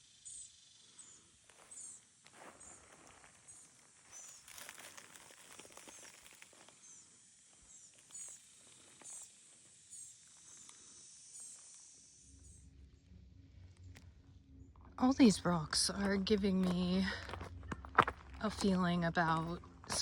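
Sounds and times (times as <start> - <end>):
crunching rustles: 4.0 - 6.8.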